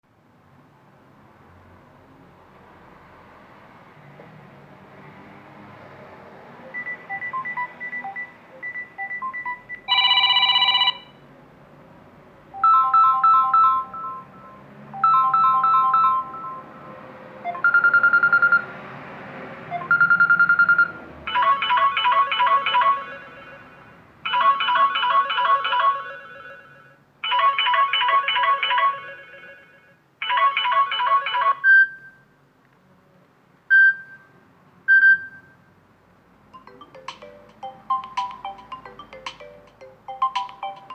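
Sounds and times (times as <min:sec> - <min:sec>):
phone ringtone melodies: 0:06.6 - 0:11.2, 0:12.6 - 0:18.7, 0:19.7 - 0:32.0, 0:36.6 - 0:40.9.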